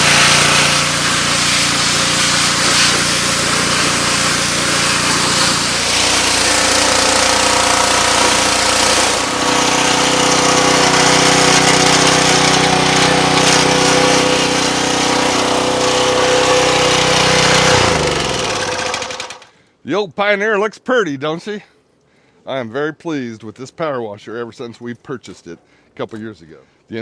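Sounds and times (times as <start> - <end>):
spray hiss: 0.0 - 6.5
small gasoline engine running: 0.0 - 19.5.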